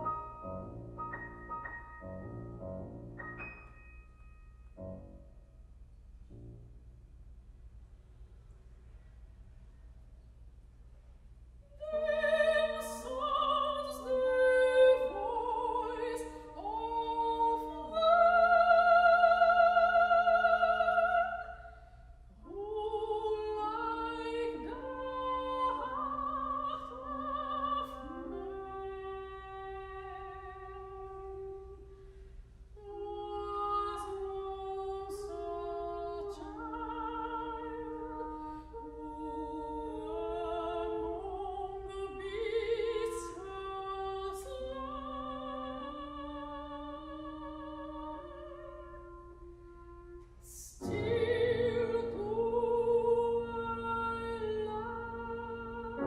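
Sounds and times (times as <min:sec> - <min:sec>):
piano: 0:00.0 - 0:07.8, 0:22.4 - 0:56.0
soprano singing with vibrato: 0:11.8 - 0:21.8, 0:22.4 - 0:31.9, 0:32.8 - 0:56.0.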